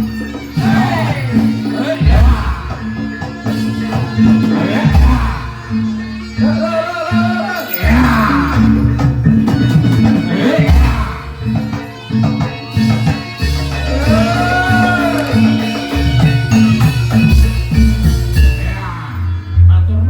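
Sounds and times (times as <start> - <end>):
drums and percussion music: 0.0 - 19.7
deep bass pattern: 6.4 - 11.6.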